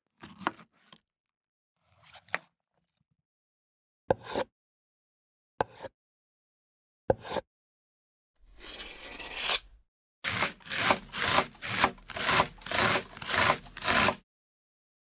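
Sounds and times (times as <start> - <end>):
kitchen knife sawing: 8.4 - 14.2.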